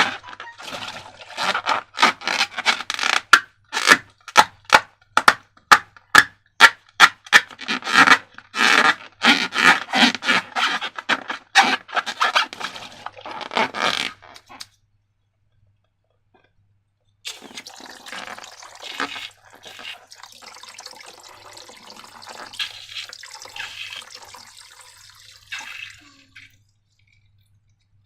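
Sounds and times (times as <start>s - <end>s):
slime scraping and rubbing: 0.0s - 4.0s, 7.0s - 14.6s, 18.8s - 20.0s.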